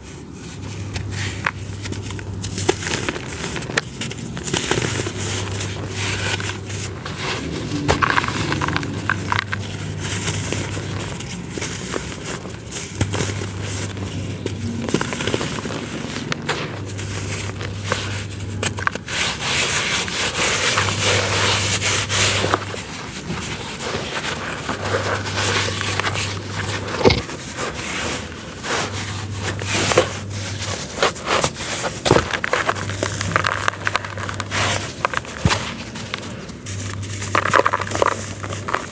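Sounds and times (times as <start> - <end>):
dry chunks crushed by hand: 31.8 - 36.3, 36.9 - 38.9.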